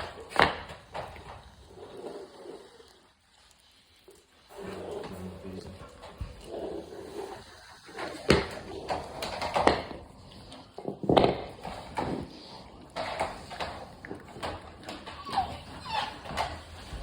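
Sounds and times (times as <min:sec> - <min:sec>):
puppy gnawing a bone: 0:00.0 - 0:17.0.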